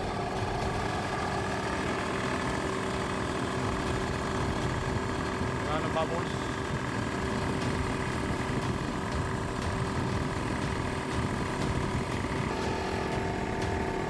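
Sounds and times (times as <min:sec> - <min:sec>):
piston air compressor running: 0:00.0 - 0:14.0
higher tone: 0:12.4 - 0:14.0.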